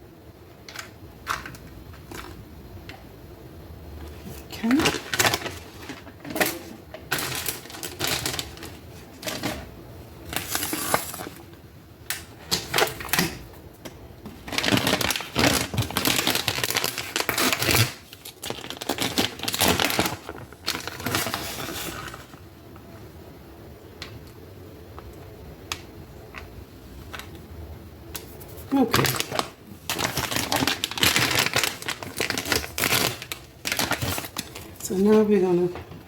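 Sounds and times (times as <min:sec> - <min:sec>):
plastic bag crinkling: 0:04.1 - 0:11.6, 0:14.4 - 0:22.4, 0:28.2 - 0:36.0.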